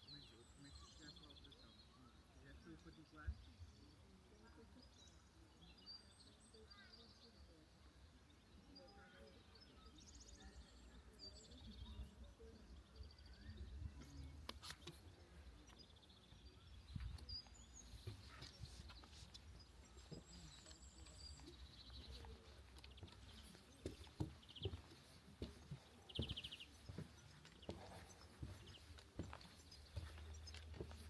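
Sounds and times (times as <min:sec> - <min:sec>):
birds chirping and trilling: 0:08.4 - 0:31.0.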